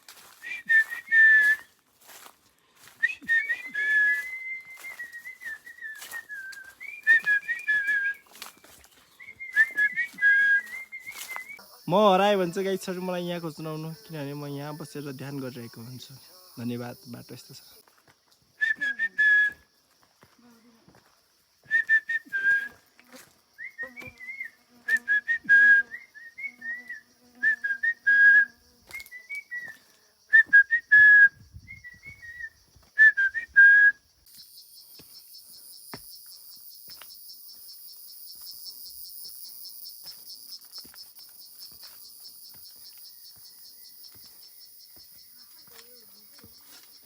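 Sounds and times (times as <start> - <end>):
clear whistled notes: 0.3 - 1.8, 2.9 - 11.6, 21.6 - 22.8, 23.6 - 34.0
high fast-pulsing insect buzz: 23.1 - 28.9.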